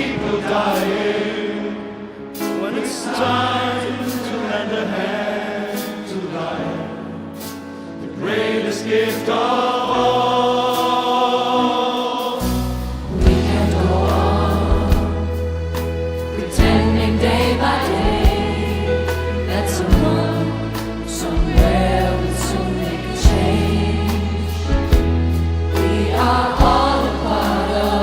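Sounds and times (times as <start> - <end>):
choir singing sustained notes: 0.0 - 28.0
deep bass line: 12.6 - 28.0.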